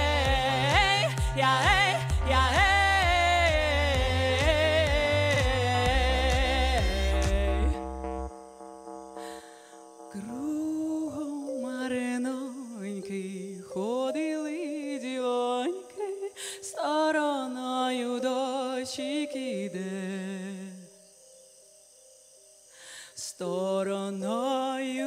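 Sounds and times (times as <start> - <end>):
woman singing ornamented melody: 0.0 - 8.4, 9.1 - 25.0
steady held drone: 0.0 - 13.9.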